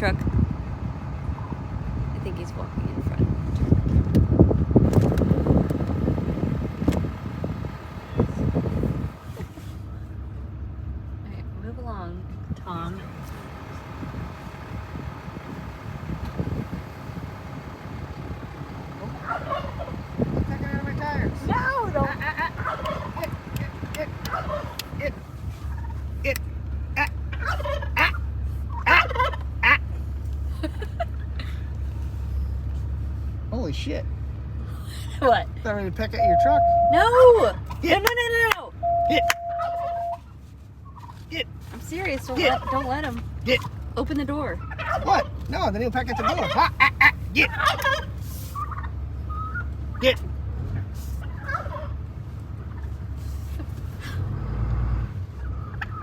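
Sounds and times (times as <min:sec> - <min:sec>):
truck engine rumble: 0:00.0 - 0:56.0
turkey gobbling: 0:19.1 - 0:20.2, 0:22.4 - 0:23.4, 0:24.2 - 0:24.9, 0:25.6 - 0:26.1, 0:27.0 - 0:29.9, 0:38.8 - 0:41.2, 0:42.3 - 0:43.0, 0:44.5 - 0:45.5, 0:46.1 - 0:50.2, 0:51.2 - 0:52.0, 0:52.7 - 0:53.0, 0:55.4 - 0:56.0.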